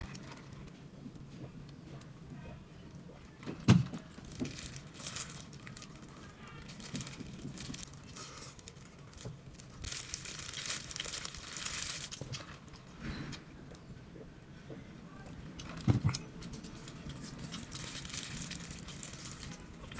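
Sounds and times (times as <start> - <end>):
food wrapper crinkling: 4.0 - 12.9, 15.6 - 19.9.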